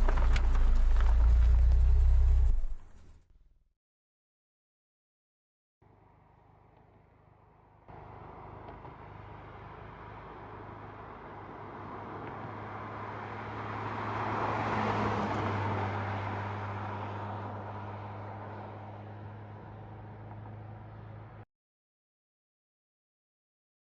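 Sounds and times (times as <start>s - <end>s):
low engine hum: 0.0s - 3.4s
road and tyre noise: 0.0s - 3.4s, 5.8s - 21.4s.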